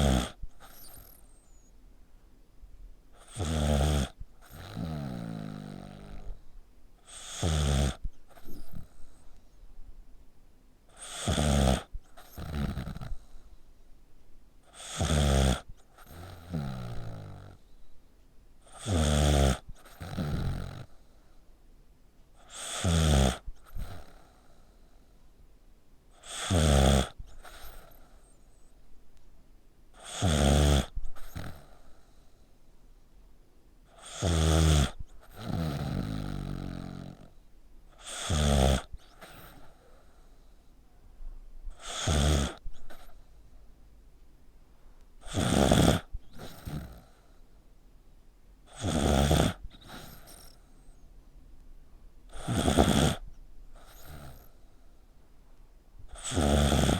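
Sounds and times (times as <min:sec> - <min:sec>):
pet snoring loudly: 0:00.0 - 0:01.3, 0:03.2 - 0:06.4, 0:07.0 - 0:09.2, 0:10.9 - 0:13.4, 0:14.7 - 0:17.6, 0:18.6 - 0:21.0, 0:22.4 - 0:24.6, 0:26.2 - 0:28.1, 0:30.0 - 0:32.0, 0:33.9 - 0:37.4, 0:38.0 - 0:39.8, 0:41.7 - 0:43.2, 0:45.2 - 0:47.3, 0:48.7 - 0:50.6, 0:52.3 - 0:54.6, 0:56.1 - 0:56.9
soft breath out: 0:49.6 - 0:51.1.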